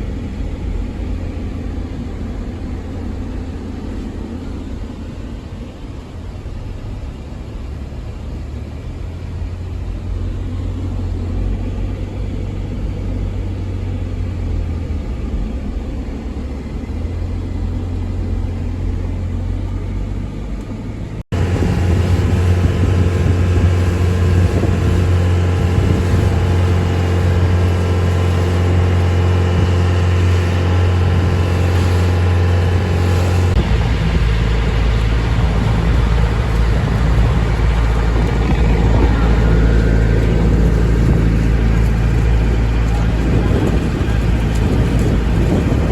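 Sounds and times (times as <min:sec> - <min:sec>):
vehicle engine running: 0:00.0 - 0:45.9.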